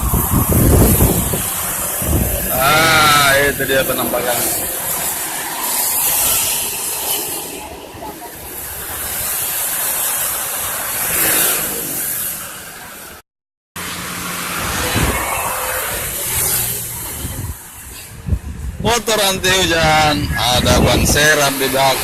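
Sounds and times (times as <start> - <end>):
heavy rain hissing: 0.0 - 13.2, 19.6 - 22.0
traffic on wet road: 0.0 - 13.2, 13.8 - 22.0.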